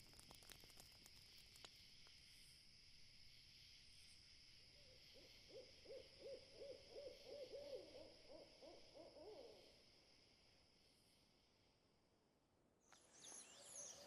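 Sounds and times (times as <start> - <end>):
faint owl hooting: 5.2 - 9.8.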